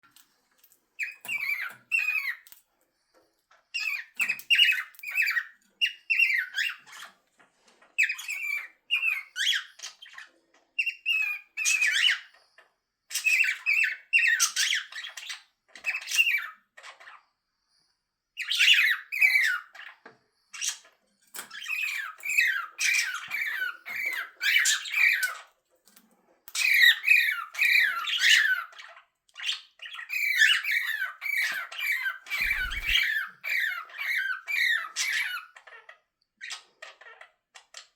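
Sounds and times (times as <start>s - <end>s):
parrot calling: 29.9s - 35.8s.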